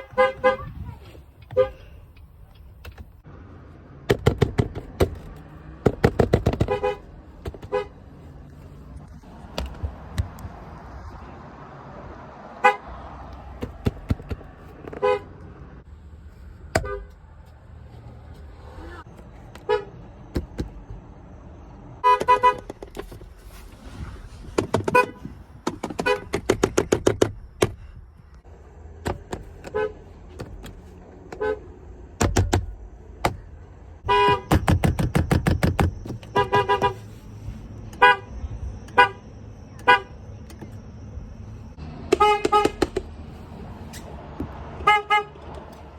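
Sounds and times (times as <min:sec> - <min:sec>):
car horns honking: 0:00.0 - 0:02.1, 0:05.9 - 0:08.1, 0:12.5 - 0:14.0, 0:14.8 - 0:15.8, 0:16.7 - 0:17.2, 0:19.0 - 0:20.9, 0:21.9 - 0:23.2, 0:24.7 - 0:26.6, 0:29.1 - 0:33.4, 0:34.0 - 0:43.2, 0:44.6 - 0:45.6.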